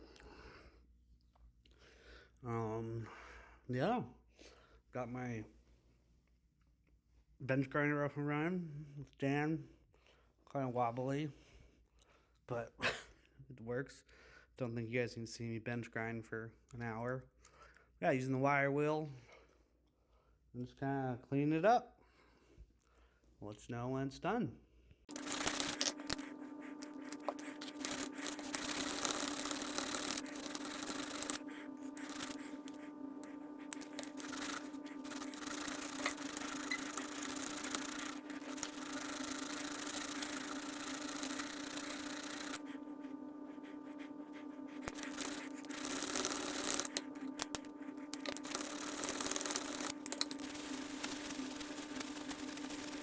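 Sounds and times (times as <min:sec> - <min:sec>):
wire wheel scrubbing metal: 0:25.1 - 0:42.8, 0:43.5 - 0:53.0
bench grinder humming: 0:25.1 - 0:53.0.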